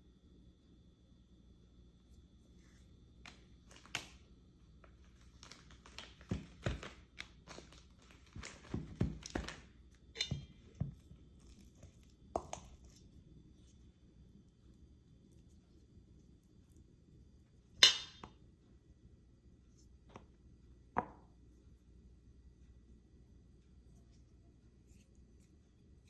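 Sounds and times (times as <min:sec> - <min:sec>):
food preparation knocks and taps: 0:06.0 - 0:07.6, 0:08.3 - 0:11.2, 0:12.3 - 0:12.8, 0:20.1 - 0:21.4.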